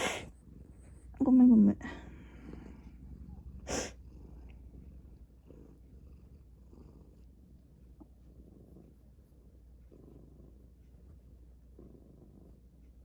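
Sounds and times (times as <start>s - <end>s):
sharp sniff: 0.0s - 0.3s, 3.7s - 4.0s
cat purring: 0.0s - 13.0s.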